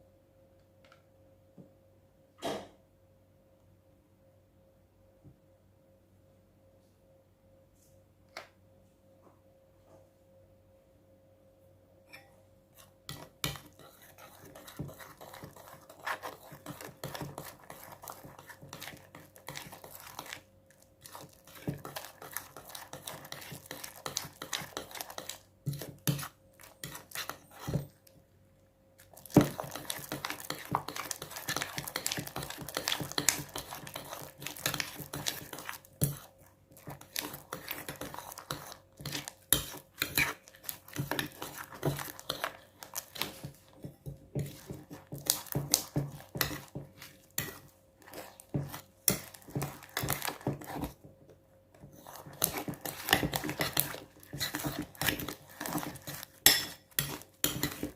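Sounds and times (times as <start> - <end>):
utensil scraping a bowl: 12.2 - 20.4, 21.0 - 28.0, 29.2 - 51.0, 51.8 - 57.9.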